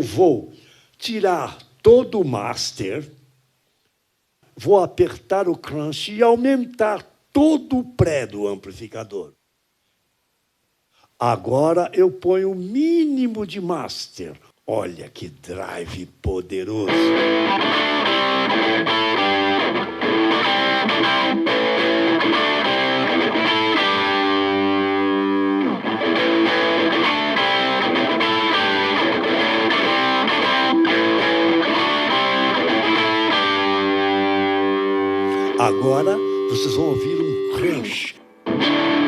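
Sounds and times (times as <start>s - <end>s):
distorted electric guitar: 16.8s - 39.0s.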